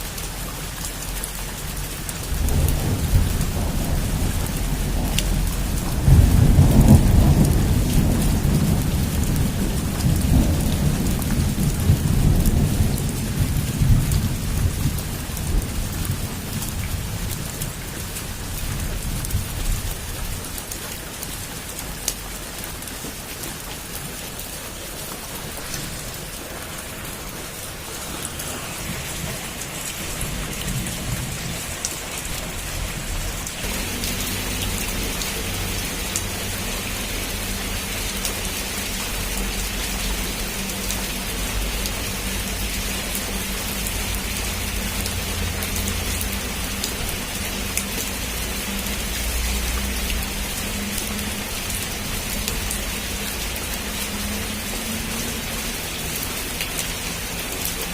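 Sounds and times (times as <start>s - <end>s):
heavy rain on a roof: 0.0s - 57.9s
thunder rolling: 2.2s - 20.4s, 25.3s - 37.4s.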